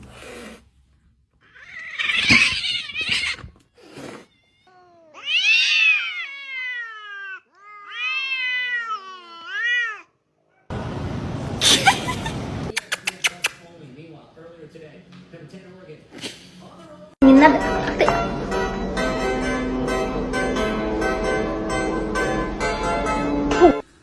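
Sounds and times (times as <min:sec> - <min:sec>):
cat yowling: 0:01.4 - 0:03.5, 0:04.1 - 0:10.1.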